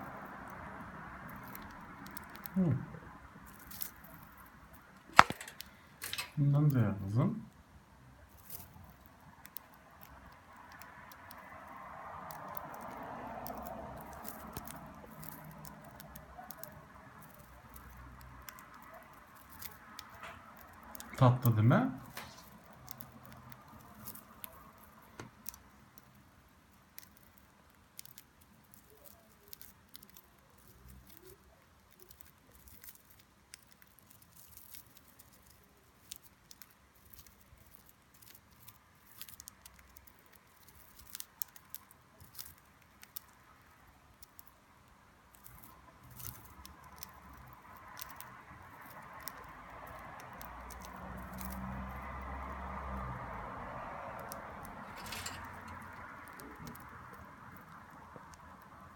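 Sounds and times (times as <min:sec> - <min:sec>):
budgerigar nibbling food: 0:08.2 - 0:21.2, 0:45.3 - 0:53.1.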